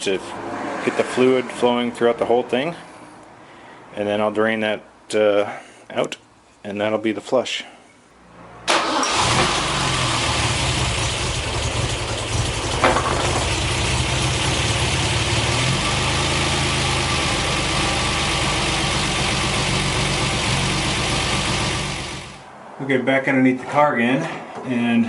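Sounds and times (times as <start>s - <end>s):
car engine idling: 8.8s - 22.5s.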